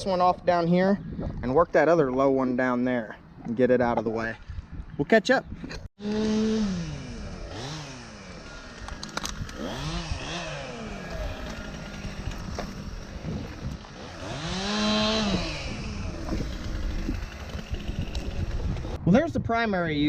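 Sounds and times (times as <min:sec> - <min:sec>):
chainsaw revving and idling: 0:06.0 - 0:19.0.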